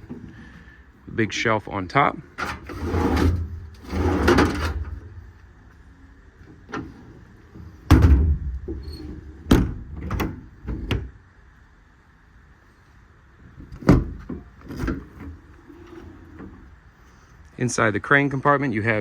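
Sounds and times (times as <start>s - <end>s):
drawer sliding: 2.4s - 5.1s, 13.8s - 16.6s
compartment door thudding shut: 7.9s - 8.8s, 9.5s - 11.1s.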